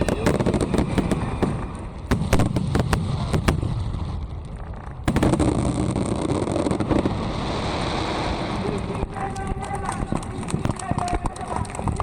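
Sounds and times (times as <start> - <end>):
loud firework burst: 0.0 - 9.0
fireworks crackling pops: 0.0 - 12.0
low fireworks rumble: 0.0 - 12.0.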